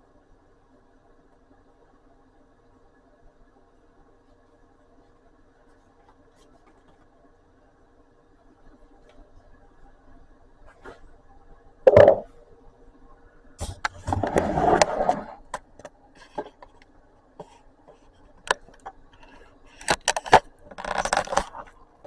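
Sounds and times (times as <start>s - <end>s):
scraping and rustling: 13.6s - 15.6s.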